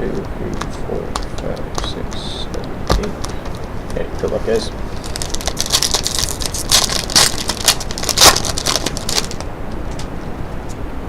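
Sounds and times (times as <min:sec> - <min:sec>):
wrapper crinkling: 0:02.8 - 0:09.5.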